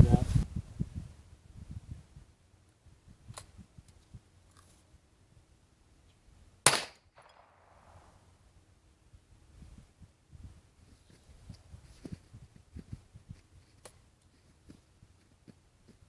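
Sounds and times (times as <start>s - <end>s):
rifle shot crack: 6.6s - 8.2s.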